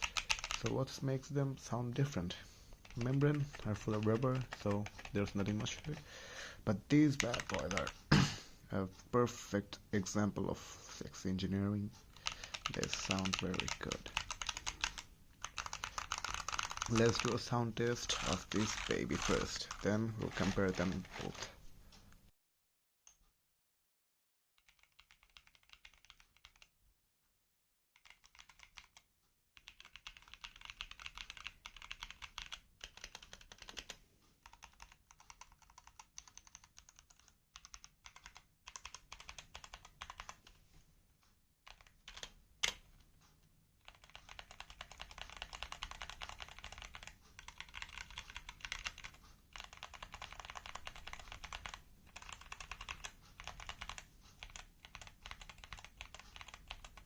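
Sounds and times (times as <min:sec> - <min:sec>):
fast typing on mechanical keyboard: 0:00.0 - 0:00.7, 0:02.7 - 0:06.0, 0:07.0 - 0:08.0, 0:12.1 - 0:21.5, 0:24.6 - 0:26.7, 0:28.0 - 0:40.5, 0:41.7 - 0:42.8, 0:43.8 - 0:57.0
sharp keyboard clack: 0:07.1 - 0:08.0.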